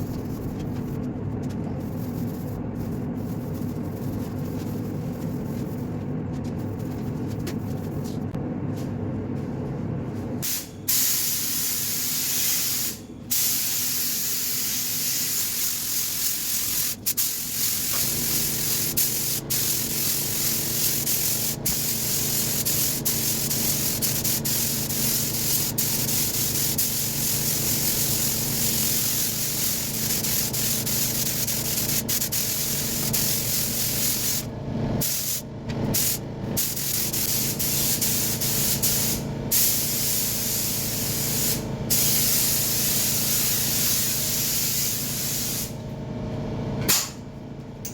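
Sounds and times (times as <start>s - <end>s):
low steady hum: 0.0s - 10.4s
spray gun hissing: 10.5s - 35.4s, 36.0s - 45.8s.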